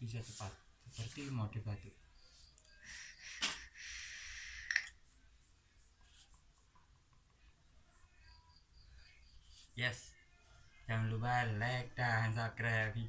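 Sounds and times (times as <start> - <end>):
person puffing vapor: 2.8 - 4.9.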